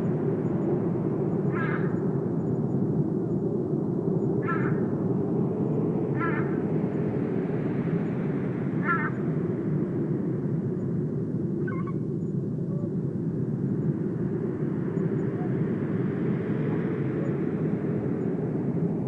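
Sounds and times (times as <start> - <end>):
harsh bird calls: 1.5 - 2.0, 4.4 - 4.9, 6.1 - 6.6, 8.8 - 9.2, 11.6 - 12.0.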